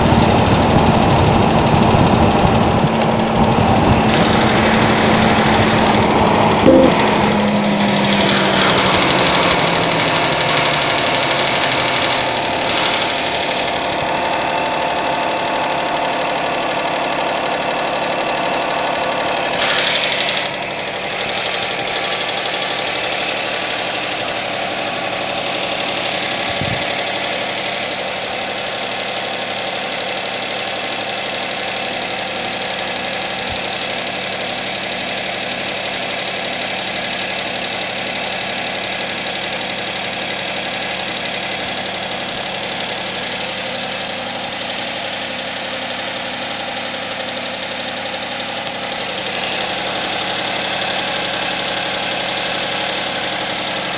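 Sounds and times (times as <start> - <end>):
car engine knocking: 0.0 - 53.9
brief loud noise: 6.7 - 8.8.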